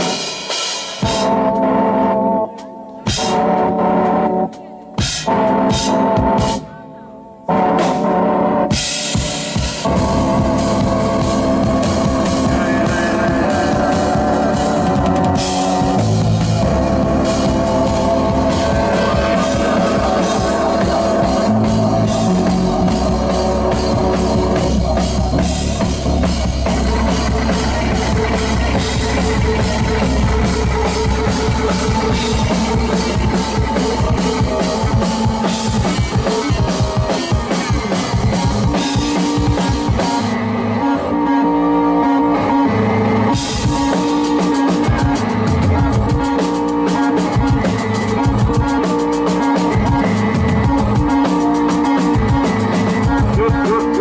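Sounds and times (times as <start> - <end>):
driving drum beat: 0.0 - 1.7, 3.1 - 3.6, 4.5 - 6.8, 8.7 - 40.4, 43.2 - 54.0
held synth chords: 0.0 - 54.0.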